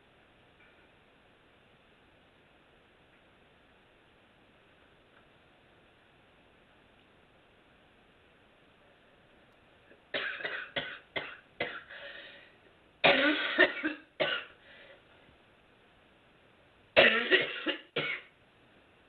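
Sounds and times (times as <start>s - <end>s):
woman coughing: 10.2s - 11.9s, 13.0s - 14.5s, 17.0s - 18.3s.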